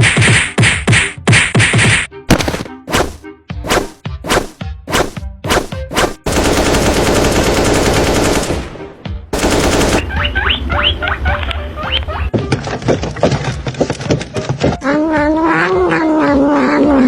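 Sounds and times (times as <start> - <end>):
rapid machine-gun-like fire: 5.0 - 10.2.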